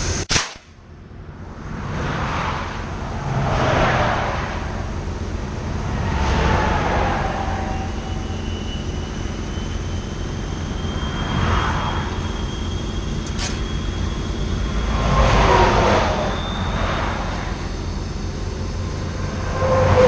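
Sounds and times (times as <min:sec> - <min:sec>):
highway traffic rumble: 0:00.8 - 0:20.0
vehicle passing: 0:01.6 - 0:08.3, 0:14.5 - 0:20.0.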